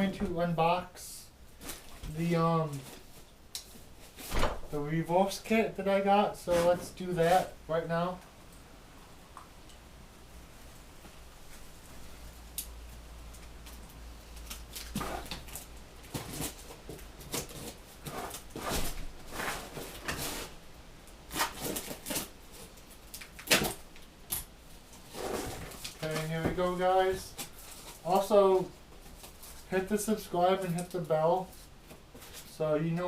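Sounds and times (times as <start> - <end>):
packaging rustling and scraping: 14.3 - 20.6, 21.3 - 23.8, 24.9 - 32.6.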